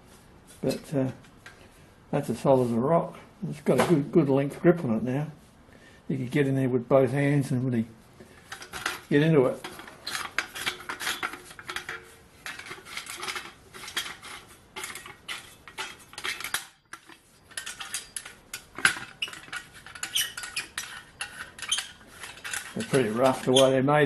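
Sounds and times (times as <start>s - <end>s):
metal shovel parts clinking: 8.4s - 23.8s.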